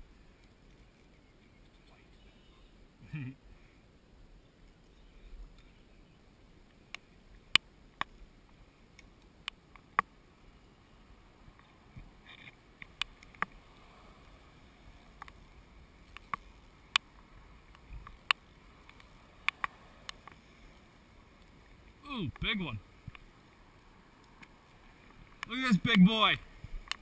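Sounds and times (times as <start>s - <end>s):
faint steady hiss: 0.0s - 27.0s
sharp irregular clicks: 17.7s - 20.4s.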